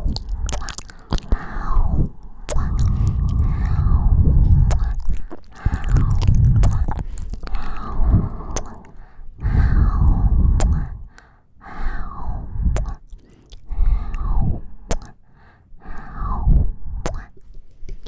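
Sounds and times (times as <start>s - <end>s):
wet kissing and sucking smacks: 0.0s - 1.4s, 4.7s - 7.8s, 8.6s - 9.0s, 12.8s - 13.8s, 14.9s - 15.2s, 17.0s - 17.6s
mouth clicks: 0.0s - 11.4s, 12.0s - 16.4s, 17.0s - 18.0s
warm breath: 0.2s - 17.3s.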